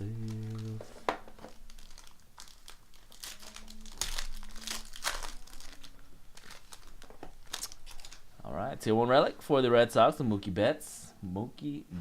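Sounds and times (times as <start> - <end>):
card pack wrapper crinkling: 0.0 - 8.2.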